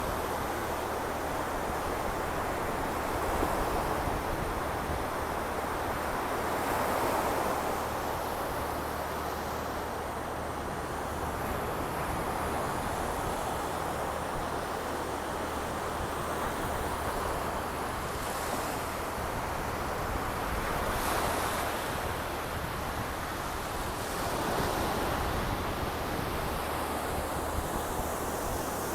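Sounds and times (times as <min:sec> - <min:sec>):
waves breaking on shore: 0:00.0 - 0:28.9.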